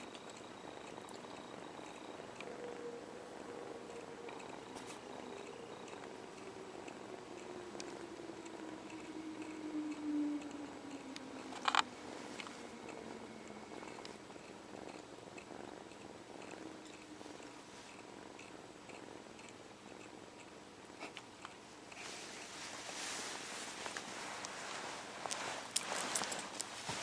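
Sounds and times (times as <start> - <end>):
kitten purring: 0.0 - 27.0
rustling clicking noise: 23.7 - 27.0.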